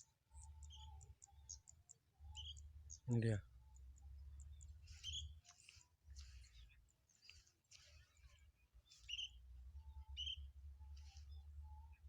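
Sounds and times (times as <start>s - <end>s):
lovebird chirping: 10.0s - 10.5s.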